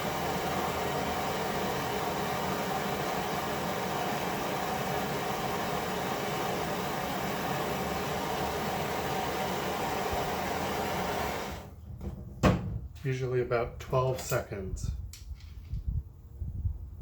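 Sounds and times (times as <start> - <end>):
heating tool rushing: 0.0 - 11.8.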